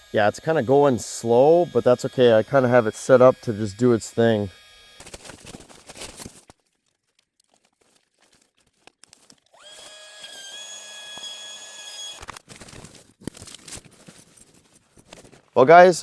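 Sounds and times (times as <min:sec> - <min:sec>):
electric pump whining: 0:00.0 - 0:06.2, 0:09.5 - 0:12.4.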